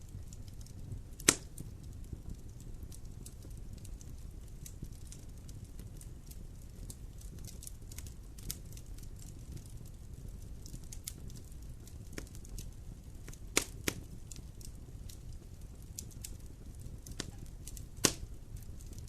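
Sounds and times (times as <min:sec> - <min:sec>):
wood fire rumbling and crackling: 0:00.0 - 0:19.0
loud sharp pop of fire: 0:01.1 - 0:01.7, 0:13.5 - 0:14.4, 0:17.0 - 0:19.0.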